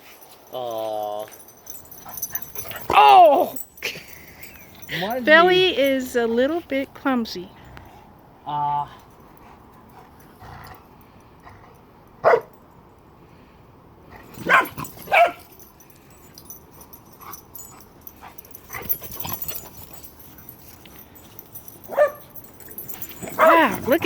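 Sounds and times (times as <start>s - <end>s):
dog barking: 12.2s - 12.5s, 14.4s - 15.4s, 21.9s - 22.4s, 23.2s - 24.0s.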